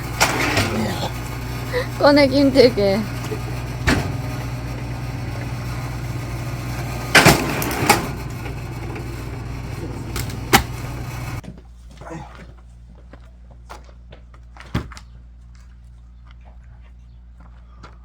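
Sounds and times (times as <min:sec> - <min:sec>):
log splitter engine running: 0:00.0 - 0:11.4.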